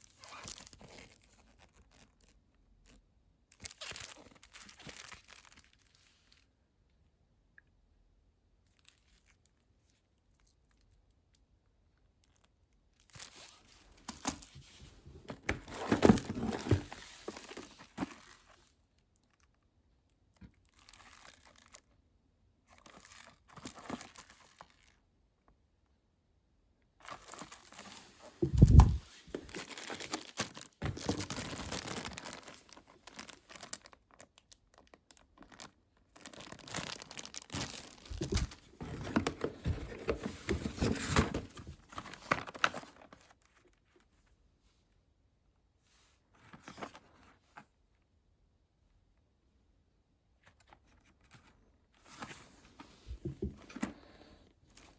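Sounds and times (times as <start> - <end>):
packaging tearing and crinkling: 28.6 - 34.8, 35.4 - 42.9.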